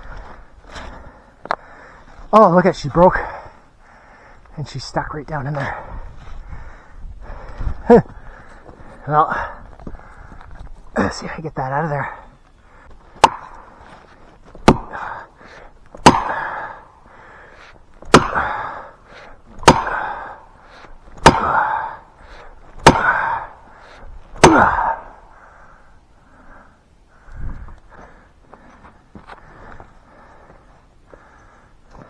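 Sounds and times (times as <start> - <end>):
hammer blows ringing: 16.0 - 16.6, 18.1 - 18.6, 19.6 - 20.2, 21.2 - 21.8, 22.8 - 23.4, 24.4 - 25.1.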